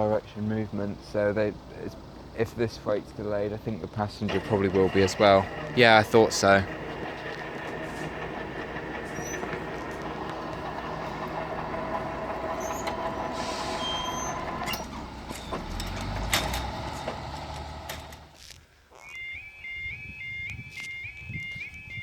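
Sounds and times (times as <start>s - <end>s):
heavy diesel vehicle running: 0.0s - 18.4s
air hiss: 13.3s - 14.4s
level crossing alarm warbling: 19.0s - 22.0s.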